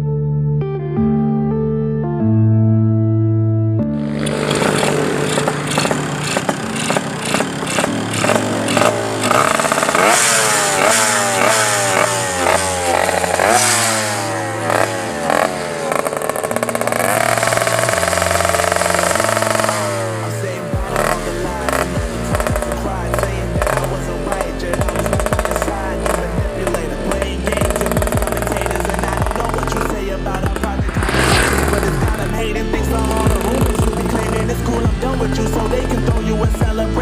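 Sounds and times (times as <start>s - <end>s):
motorcycle engine revving: 3.9s - 37.0s.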